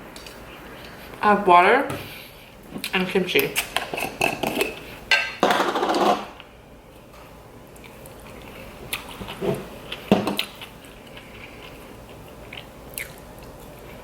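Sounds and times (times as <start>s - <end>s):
soft bites and chewing clicks: 7.7s - 9.2s, 9.9s - 14.0s.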